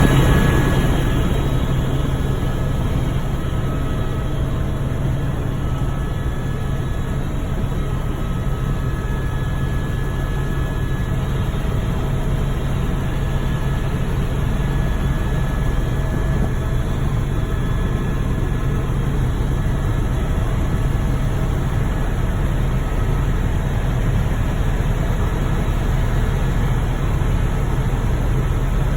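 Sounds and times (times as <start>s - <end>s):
helicopter drone: 0.0s - 28.9s.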